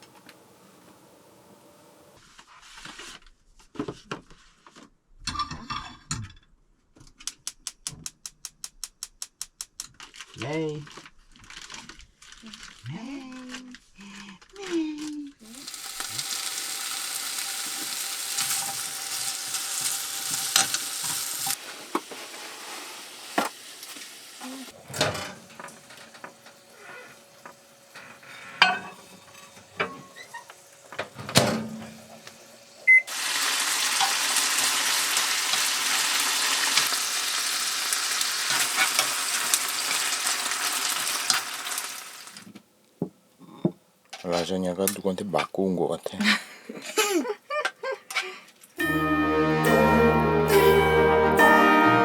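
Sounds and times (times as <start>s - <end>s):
food sizzling in a pan: 15.4s - 31.0s, 31.6s - 42.5s
utensils knocking and clinking: 24.8s - 26.7s, 28.6s - 30.2s.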